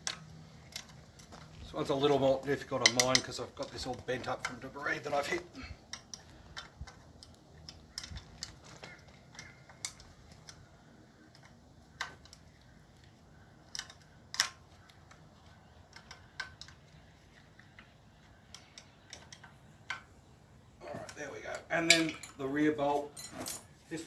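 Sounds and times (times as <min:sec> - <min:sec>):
spanner clinking on metal bolt: 0:00.0 - 0:01.3, 0:02.0 - 0:10.6, 0:13.7 - 0:17.0, 0:21.1 - 0:23.7.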